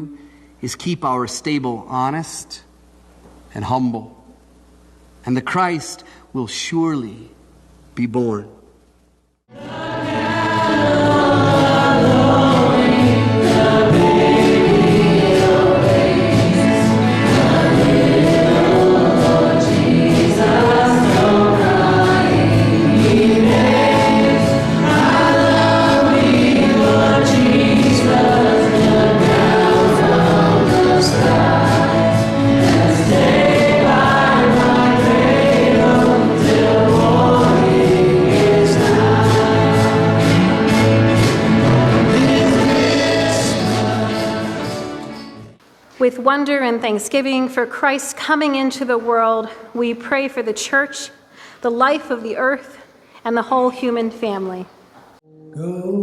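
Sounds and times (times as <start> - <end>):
church choir singing a hymn: 9.5 - 45.1.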